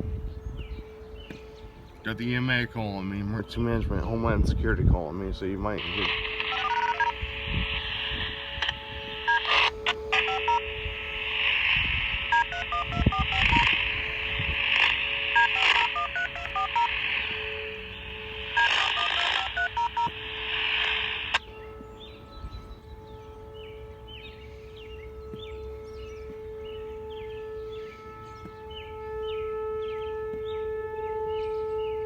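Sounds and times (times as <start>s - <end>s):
radio static hiss: 5.5s - 21.5s
touch-tone beeps: 5.8s - 7.9s, 8.5s - 10.7s, 12.2s - 21.4s.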